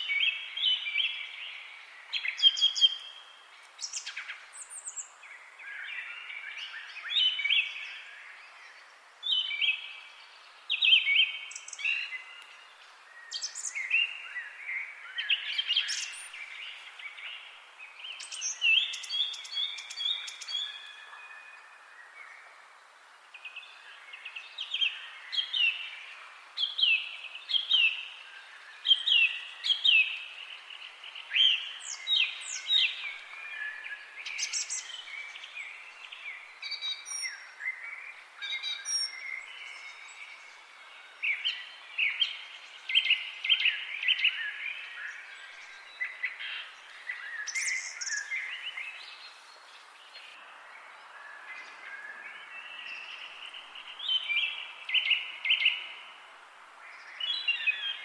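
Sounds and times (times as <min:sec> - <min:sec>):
faint background hiss: 0:00.0 - 0:58.0
songbirds chirping: 0:00.0 - 0:58.0.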